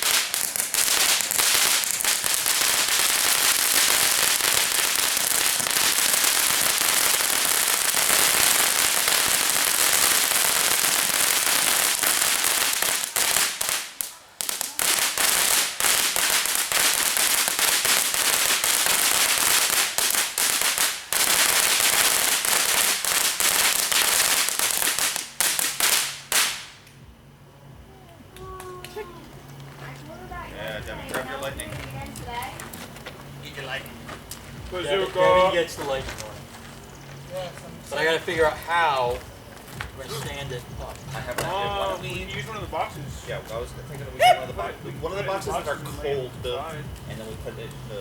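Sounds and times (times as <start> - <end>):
fireworks crackling: 0.0 - 48.0.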